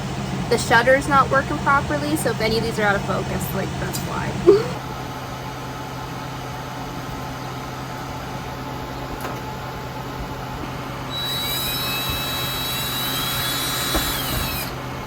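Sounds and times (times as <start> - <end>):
air conditioner humming: 0.0 - 15.0
power drill whining: 11.1 - 15.0.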